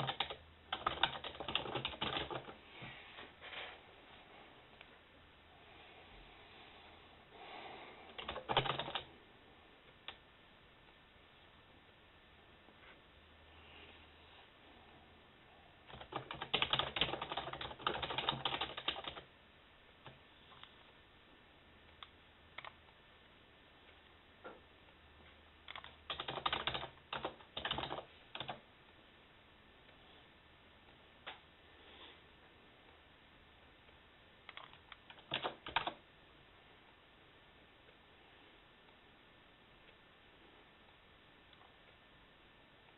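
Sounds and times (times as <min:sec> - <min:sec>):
typing on computer keyboard: 0:00.0 - 0:02.6, 0:08.1 - 0:09.1, 0:15.9 - 0:19.3, 0:22.6 - 0:22.8, 0:25.7 - 0:28.6, 0:34.5 - 0:36.0
low steady hiss: 0:00.0 - 0:42.9.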